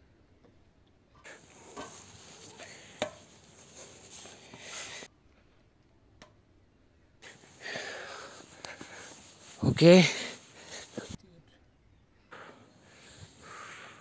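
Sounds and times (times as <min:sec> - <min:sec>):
hard breathing: 0:01.2 - 0:05.1, 0:07.2 - 0:11.2, 0:12.3 - 0:14.0.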